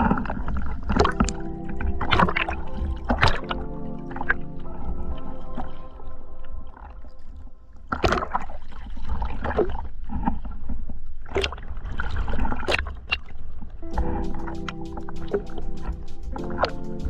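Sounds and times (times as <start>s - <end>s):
water sloshing and splashing: 0.0s - 17.0s
background music: 1.0s - 7.7s, 13.8s - 17.0s.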